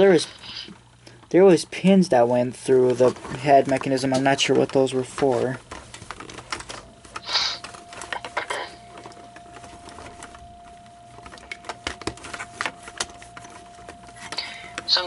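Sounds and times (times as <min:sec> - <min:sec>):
plastic parts clicking and knocking: 0:02.8 - 0:10.5.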